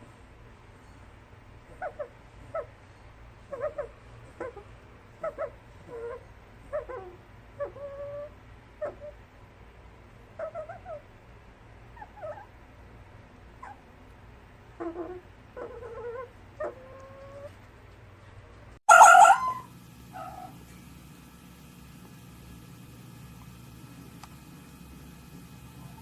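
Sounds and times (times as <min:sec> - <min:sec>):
fox whines and yips: 0:12.0 - 0:12.5, 0:14.8 - 0:17.5, 0:18.9 - 0:20.5
fox harsh call: 0:18.9 - 0:20.6.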